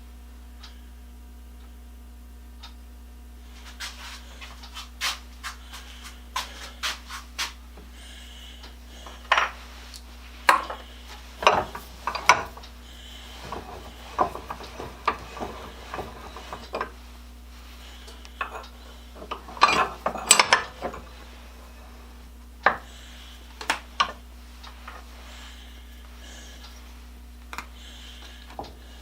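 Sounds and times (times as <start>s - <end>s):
metal tools clinking and scraping: 10.5s - 12.6s, 13.3s - 17.0s, 18.1s - 21.1s.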